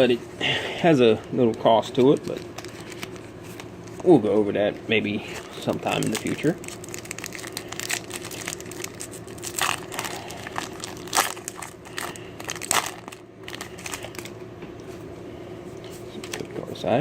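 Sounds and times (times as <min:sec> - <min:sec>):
foil wrapper crinkling: 0:01.4 - 0:04.1, 0:05.2 - 0:14.4.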